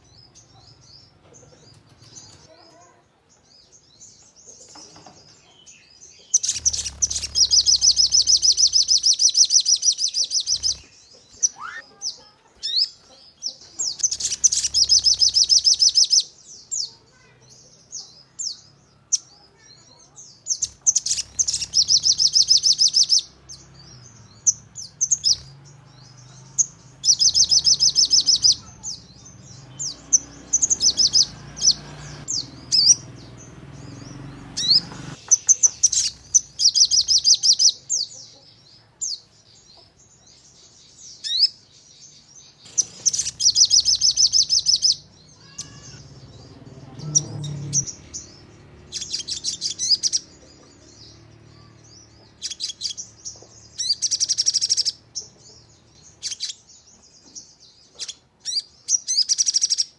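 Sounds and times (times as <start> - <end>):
bird chirps and whistled glides: 6.4 - 11.9, 13.8 - 16.9, 20.5 - 37.8, 42.6 - 50.3
bird singing fast high notes: 6.4 - 12.0, 13.9 - 16.3, 20.6 - 37.7, 42.7 - 50.3.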